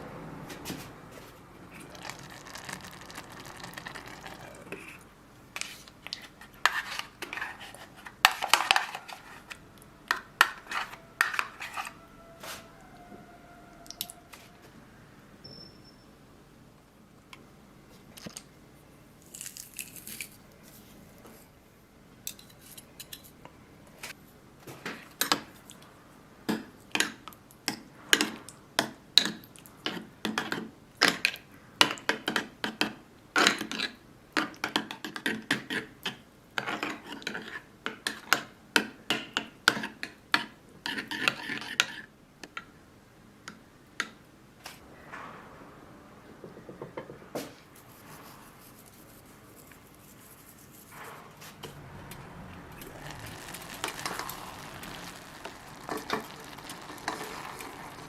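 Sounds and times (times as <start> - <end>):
utensil scraping: 1.7 - 12.8, 47.7 - 58.0.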